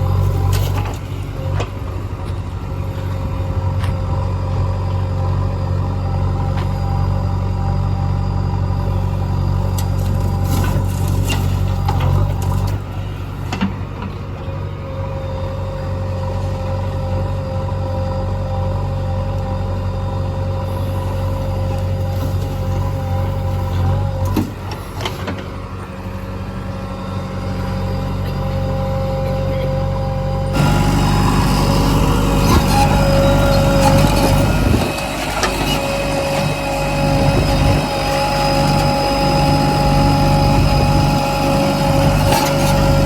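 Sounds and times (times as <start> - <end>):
diesel engine running: 0.0 - 43.0
steady whine: 25.4 - 43.0.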